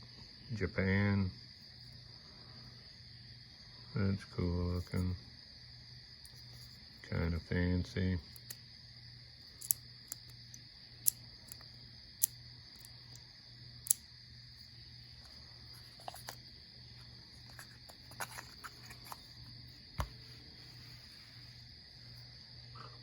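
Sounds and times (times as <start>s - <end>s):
high-pitched insect chorus: 0.0s - 23.0s
small objects ticking and thumping: 9.4s - 14.1s, 17.4s - 19.3s.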